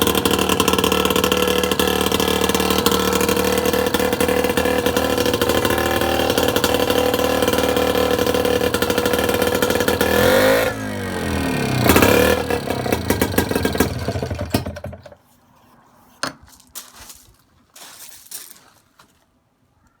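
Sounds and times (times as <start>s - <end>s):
outboard motor running: 0.0s - 15.2s.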